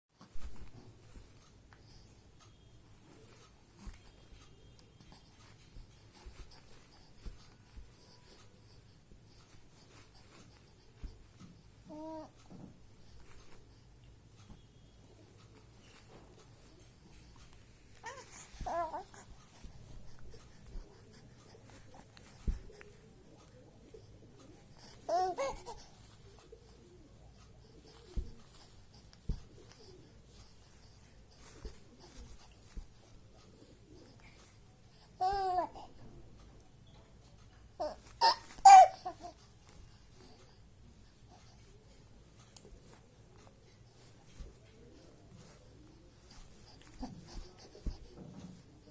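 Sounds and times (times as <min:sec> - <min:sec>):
faint rustling: 0:00.1 - 0:48.9
baby cooing: 0:17.9 - 0:19.3, 0:24.8 - 0:25.9, 0:35.2 - 0:35.9, 0:37.8 - 0:39.4
soft thumps: 0:27.9 - 0:29.8.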